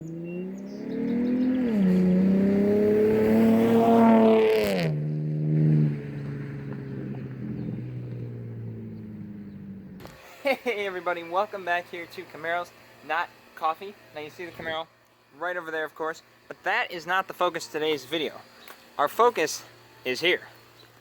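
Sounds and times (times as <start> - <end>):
car engine accelerating: 0.0 - 10.6.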